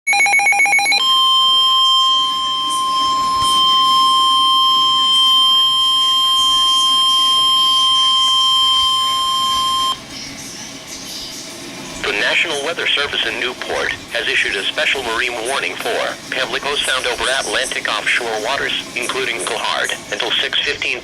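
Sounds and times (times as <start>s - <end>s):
steady high alarm tone: 0.1s - 10.2s
faint radio hiss: 12.0s - 21.0s.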